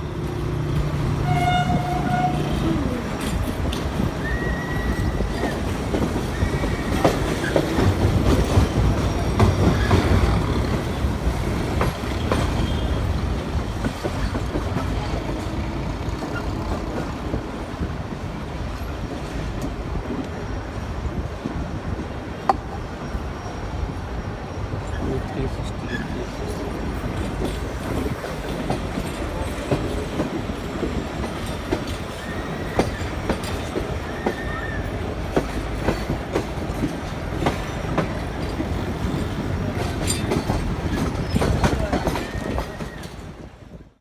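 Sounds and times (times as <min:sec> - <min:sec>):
train rumbling past: 0:00.0 - 0:44.0.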